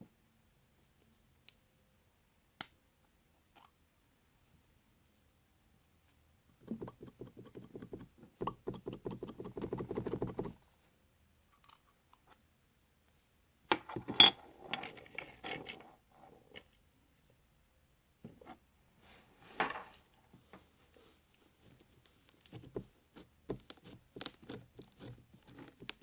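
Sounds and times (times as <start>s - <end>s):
slime crackling and popping: 23.6s - 26.0s.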